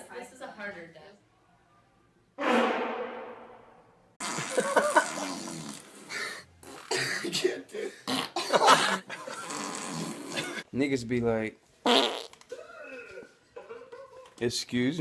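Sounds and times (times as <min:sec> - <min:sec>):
person coughing: 0:06.8 - 0:09.0.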